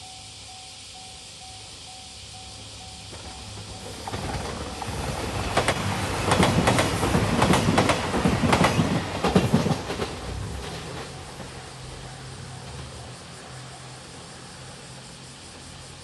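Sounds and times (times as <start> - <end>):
train wheels clacking over rail joints: 3.1 - 13.1.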